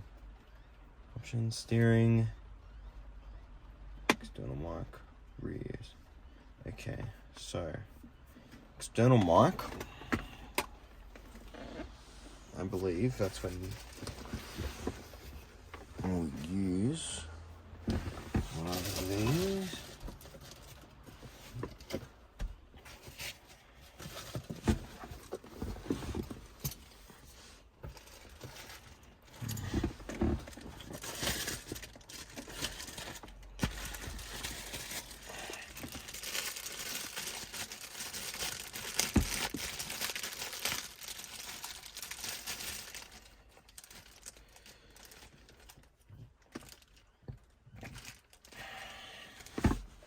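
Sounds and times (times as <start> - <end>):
plastic packaging crinkling: 18.4 - 21.0, 30.4 - 47.1.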